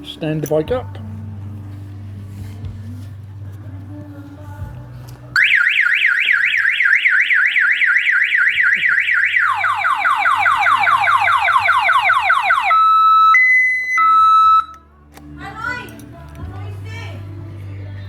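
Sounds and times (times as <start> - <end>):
electronic alarm siren warbling: 5.4 - 14.8.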